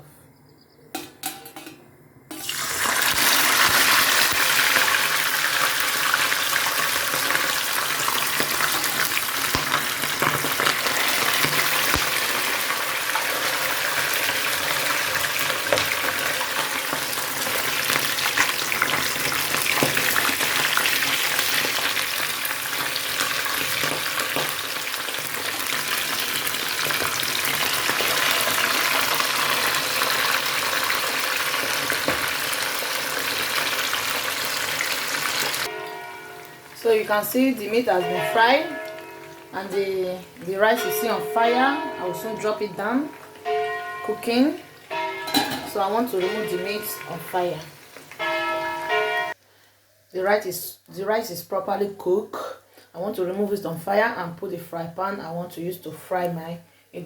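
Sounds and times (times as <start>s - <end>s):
meat sizzling in oil: 2.3s - 35.7s, 46.4s - 48.2s.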